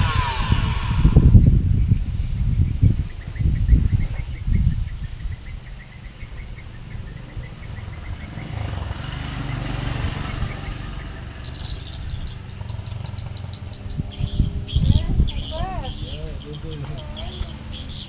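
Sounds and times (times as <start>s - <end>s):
diesel engine running: 0.0s - 1.7s
birds chirping: 0.0s - 18.0s.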